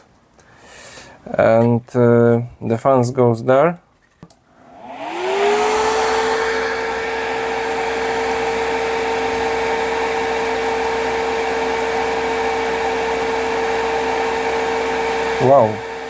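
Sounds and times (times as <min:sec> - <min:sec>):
fan whining with rushing air: 0:04.6 - 0:16.0.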